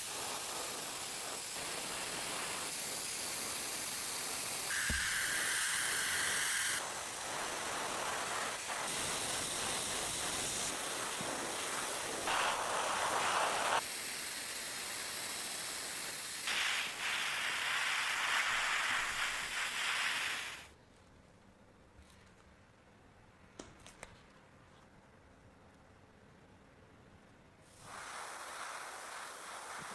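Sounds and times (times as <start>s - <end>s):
compressed air spray hissing: 0.0s - 20.7s, 27.7s - 29.9s.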